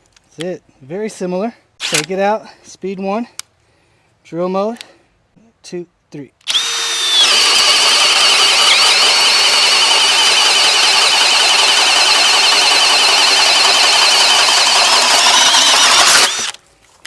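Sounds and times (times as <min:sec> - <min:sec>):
drill boring through wood: 0:06.5 - 0:16.6.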